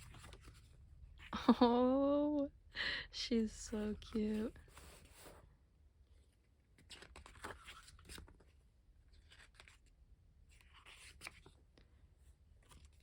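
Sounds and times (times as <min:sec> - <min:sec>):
paper pages turning: 0:00.0 - 0:00.7, 0:06.8 - 0:11.6, 0:12.6 - 0:13.0.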